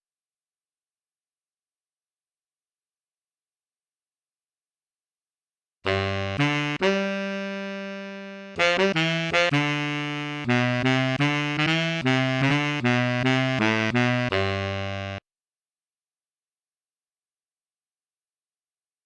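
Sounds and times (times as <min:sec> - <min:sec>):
sampled brass instrument notes: 0:05.9 - 0:15.2.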